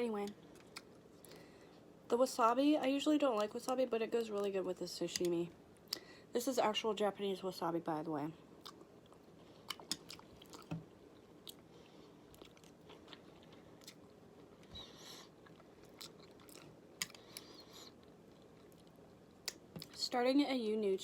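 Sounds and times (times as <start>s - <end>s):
person chewing with wet smacks: 0.3s - 1.4s, 8.6s - 20.0s.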